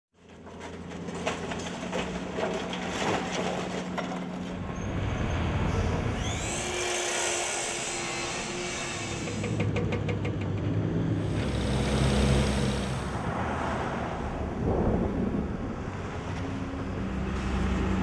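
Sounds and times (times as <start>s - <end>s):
tool whine: 4.8s - 10.4s, 11.1s - 13.2s
power tools and machinery running: 4.9s - 13.2s.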